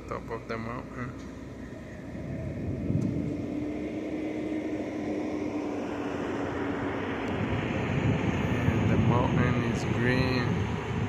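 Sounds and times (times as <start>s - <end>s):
heavy engine droning: 0.0s - 11.0s.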